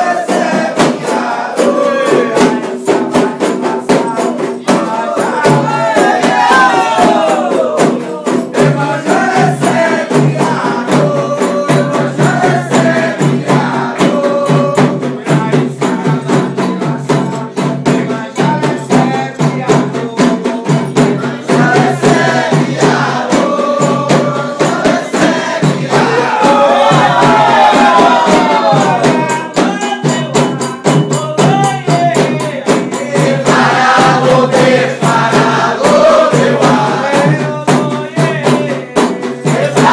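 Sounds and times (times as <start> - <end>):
fast hand percussion: 0.0 - 39.9
voices singing a chant: 0.0 - 39.9.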